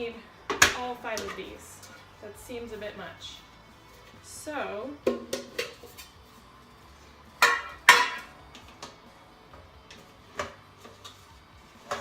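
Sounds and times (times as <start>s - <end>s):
metal pans clanking: 5.1s - 6.2s, 7.4s - 9.0s, 11.8s - 12.0s.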